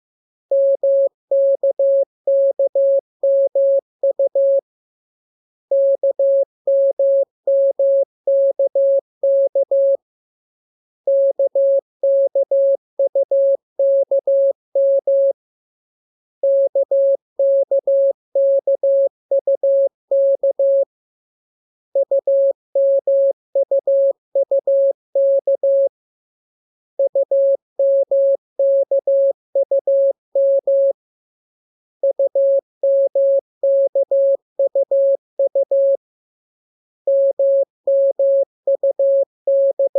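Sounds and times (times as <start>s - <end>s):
morse code beeps: 0.5s - 4.6s, 5.7s - 10.0s, 11.1s - 15.4s, 16.4s - 20.9s, 22.0s - 25.9s, 27.0s - 31.0s, 32.0s - 36.0s, 37.1s - 39.9s.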